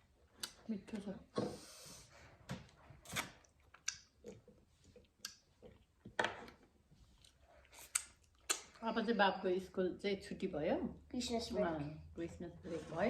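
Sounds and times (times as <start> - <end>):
chewing and mouth clicks: 3.4 - 6.1, 7.0 - 8.8.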